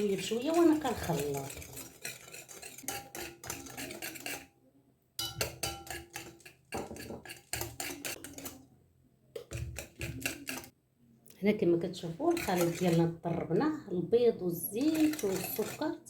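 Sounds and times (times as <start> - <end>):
utensil beating eggs in a bowl: 0.0 - 4.5, 5.2 - 8.7, 9.3 - 10.8, 12.2 - 13.4, 14.5 - 16.0.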